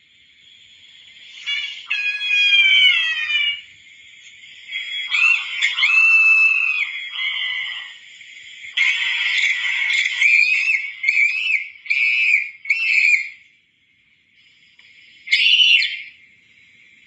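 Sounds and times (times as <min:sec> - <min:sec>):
cartoon high-pitched scream: 0:01.4 - 0:03.7, 0:05.1 - 0:07.9, 0:08.8 - 0:13.3
cartoon yelps: 0:01.7 - 0:03.6.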